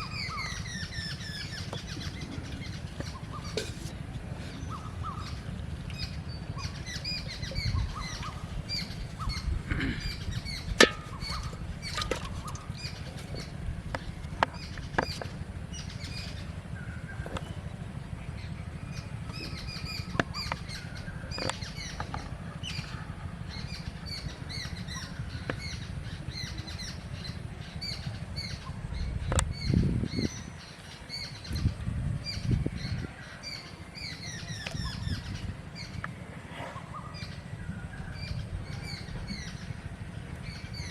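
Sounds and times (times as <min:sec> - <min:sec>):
low rumble: 0:00.0 - 0:30.6
small birds chirping: 0:00.0 - 0:40.9.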